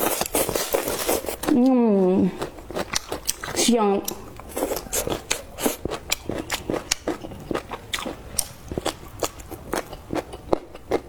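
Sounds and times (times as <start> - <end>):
person chewing crunchy food: 0.0 - 11.0.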